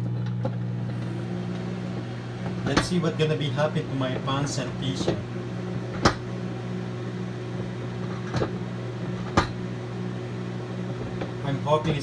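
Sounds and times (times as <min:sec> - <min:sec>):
microwave oven humming: 0:00.0 - 0:12.0.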